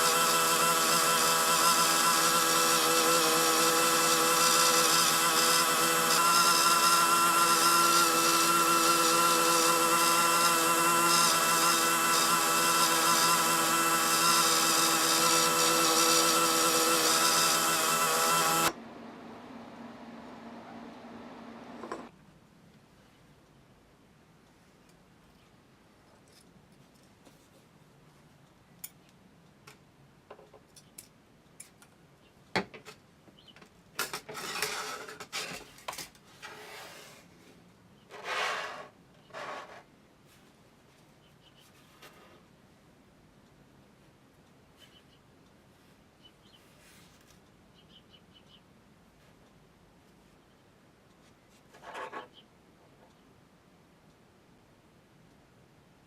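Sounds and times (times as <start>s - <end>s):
small electric motor whining: 0.0s - 18.8s
scratchy rubbing: 38.1s - 39.9s.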